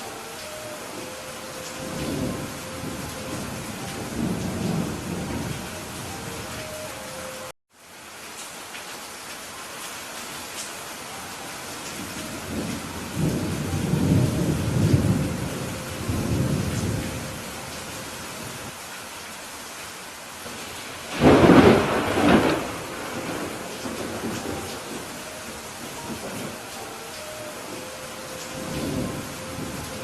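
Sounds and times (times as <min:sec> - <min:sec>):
steady rain falling: 0:00.0 - 0:30.0
thunder rumbling: 0:00.9 - 0:06.6, 0:12.0 - 0:18.7, 0:20.6 - 0:26.8, 0:27.7 - 0:30.0
sharp thunderclap: 0:21.1 - 0:24.9.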